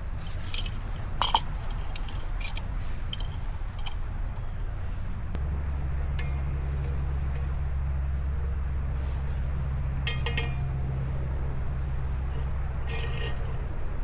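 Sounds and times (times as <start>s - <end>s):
steady low hum: 0.0s - 14.0s
clinks of small hard items: 0.1s - 4.4s.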